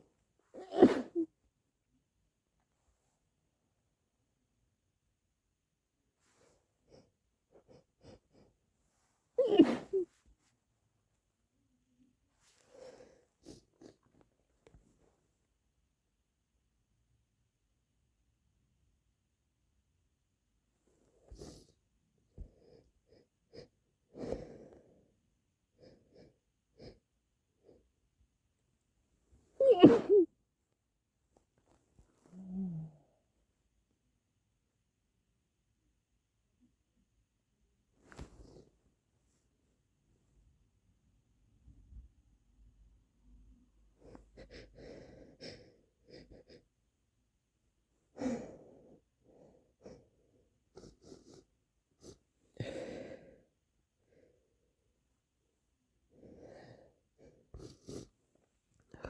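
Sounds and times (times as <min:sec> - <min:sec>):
person sniffing: 0:00.6 - 0:01.3, 0:09.4 - 0:10.1, 0:29.6 - 0:30.3, 0:57.5 - 0:58.2
person sniffling: 0:00.6 - 0:01.3, 0:06.3 - 0:10.2, 0:29.6 - 0:30.3, 0:50.7 - 0:53.4, 0:56.3 - 0:58.2
stifled sneeze: 0:00.6 - 0:01.3, 0:09.4 - 0:10.2, 0:29.6 - 0:30.3.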